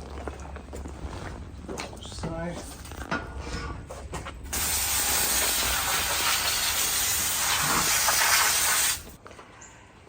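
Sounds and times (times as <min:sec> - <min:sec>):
water jet spraying on log: 0:04.5 - 0:09.2.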